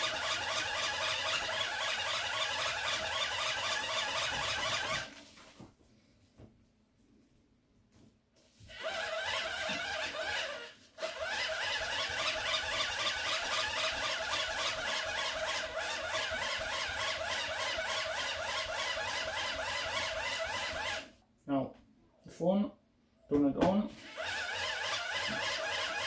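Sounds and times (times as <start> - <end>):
hand-crank dynamo whirring: 0.0 - 5.1, 8.7 - 21.1, 23.9 - 26.0.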